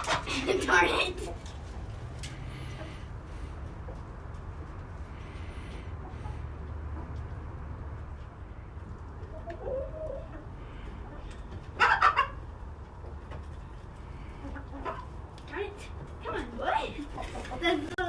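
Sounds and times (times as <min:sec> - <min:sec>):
chicken squawking: 0:00.0 - 0:01.4, 0:09.2 - 0:12.5, 0:14.1 - 0:15.2
chicken clucking: 0:00.0 - 0:18.0.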